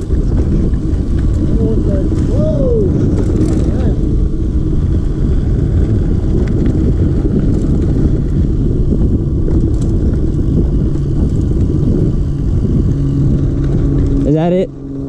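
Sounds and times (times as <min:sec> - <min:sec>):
bike tyres rumbling on dirt: 0:00.0 - 0:15.0
wind buffeting microphone: 0:00.0 - 0:15.0
sharp rattling clicks: 0:09.4 - 0:12.0.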